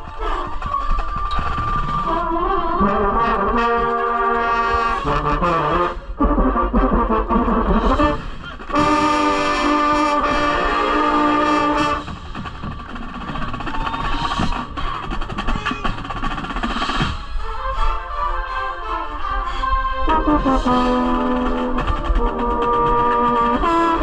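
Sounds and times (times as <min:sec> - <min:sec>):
brass chord: 0:02.9 - 0:12.0, 0:19.9 - 0:21.9.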